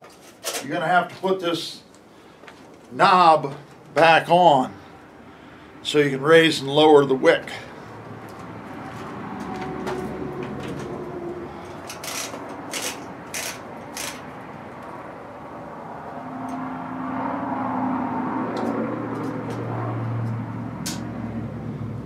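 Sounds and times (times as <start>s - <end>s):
metal parts clicking: 11.6s - 14.3s.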